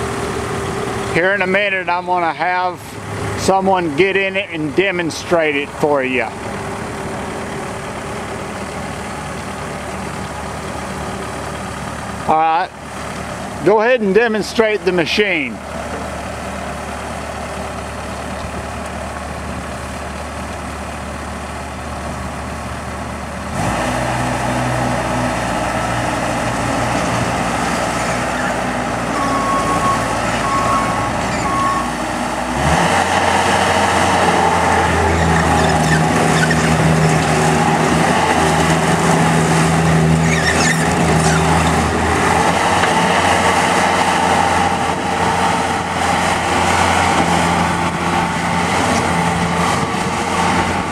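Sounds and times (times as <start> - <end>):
diesel engine running: 0.0 - 50.9
short beeps: 29.2 - 31.9.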